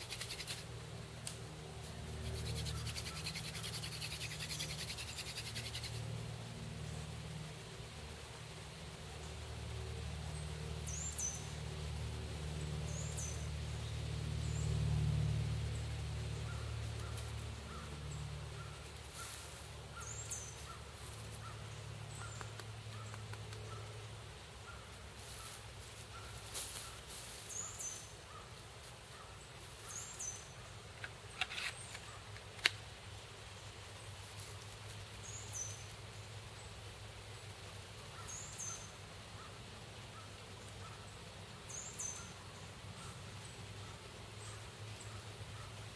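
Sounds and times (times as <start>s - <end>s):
bird chirping: 2.2s - 6.0s, 10.3s - 11.6s, 12.6s - 14.8s, 15.7s - 32.4s, 35.2s - 36.7s, 38.1s - 39.6s, 40.2s - 45.8s.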